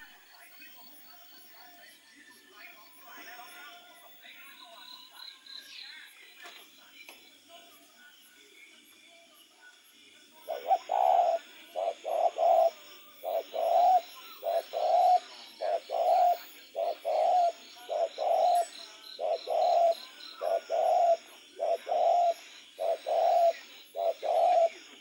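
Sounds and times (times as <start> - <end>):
dove cooing: 10.4 - 25.0.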